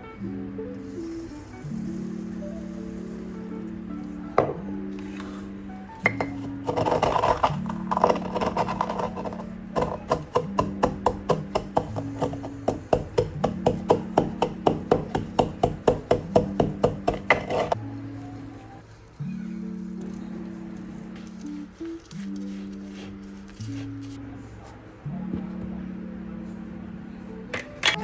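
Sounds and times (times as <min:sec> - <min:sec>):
soft background music: 0:00.0 - 0:28.0
knife chopping on wooden board: 0:06.1 - 0:17.8.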